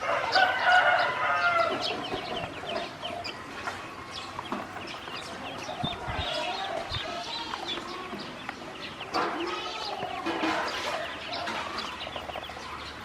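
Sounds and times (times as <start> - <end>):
ducklings peeping: 0.0 - 13.0.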